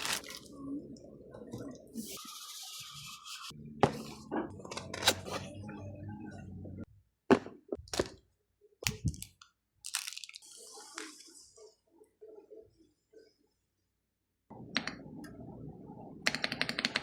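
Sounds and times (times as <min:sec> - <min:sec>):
crinkly rustling: 0:00.0 - 0:00.5, 0:09.1 - 0:10.6.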